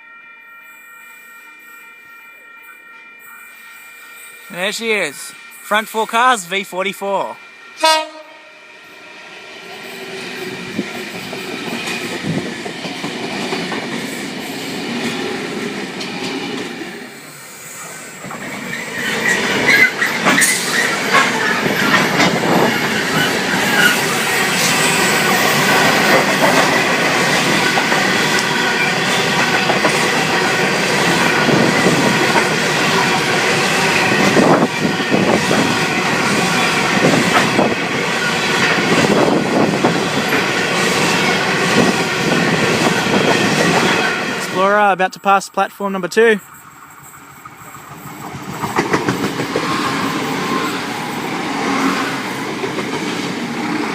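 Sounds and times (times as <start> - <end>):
train wheels clattering: 10.3 - 16.7, 18.2 - 44.4, 47.0 - 53.9
high-pitched wheel squeal: 18.7 - 25.5.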